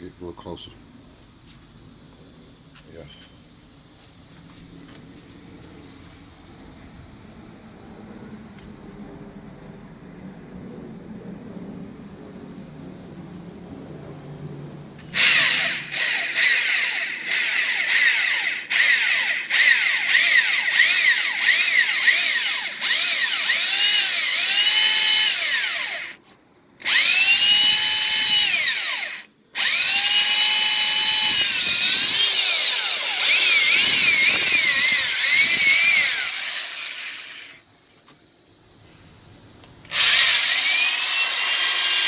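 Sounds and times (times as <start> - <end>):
power drill boring through wall: 15.1 - 26.2, 26.8 - 37.6, 39.9 - 42.0.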